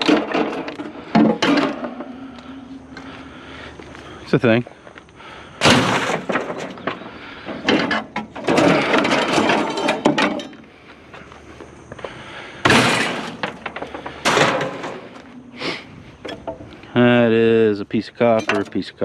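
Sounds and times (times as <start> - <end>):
metal scrap crashing and clattering: 0.0 - 2.6, 5.6 - 10.6, 12.6 - 15.3.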